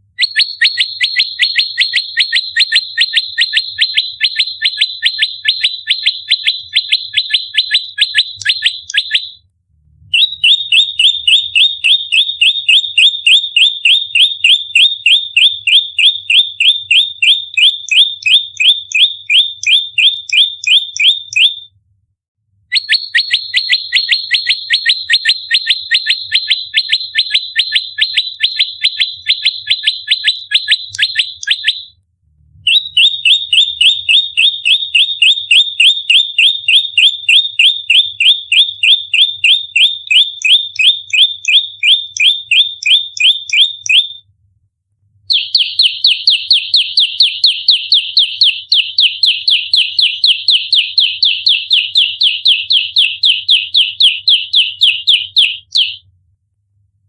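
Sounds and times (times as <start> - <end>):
bird rapid high call: 22.8 - 31.9.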